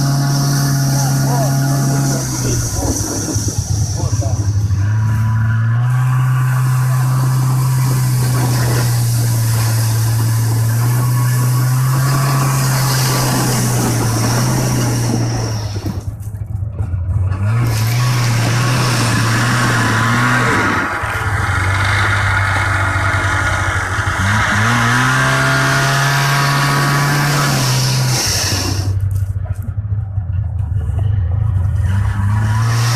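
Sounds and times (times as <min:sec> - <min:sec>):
constant rushing noise: 0:00.0 - 0:05.9, 0:06.5 - 0:24.8
vehicle engine running: 0:00.0 - 0:32.9.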